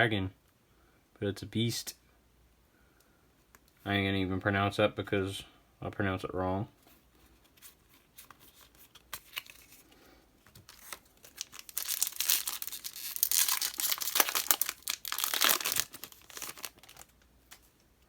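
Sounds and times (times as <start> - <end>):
foil wrapper tearing and crinkling: 10.6 - 17.7.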